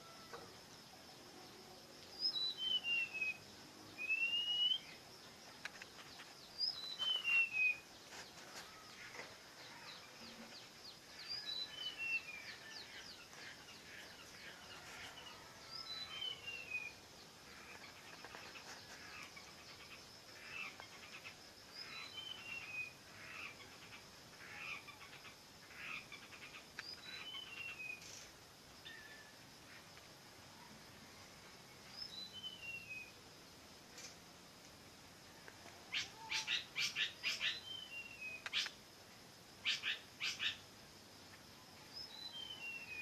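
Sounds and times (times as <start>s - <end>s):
birds chirping: 0.0s - 29.9s, 35.5s - 38.8s, 39.6s - 40.7s
songbird singing descending phrase: 2.2s - 5.0s.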